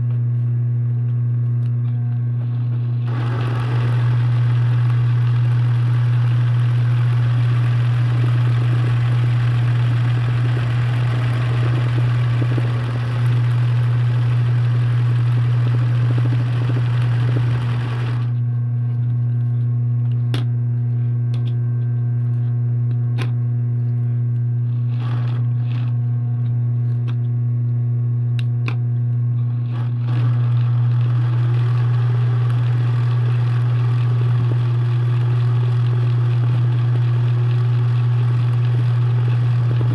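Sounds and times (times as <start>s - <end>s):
machine whirring hum: 0.0s - 39.9s
embroidery machine stitching: 3.1s - 18.4s, 24.8s - 25.9s, 29.6s - 39.9s.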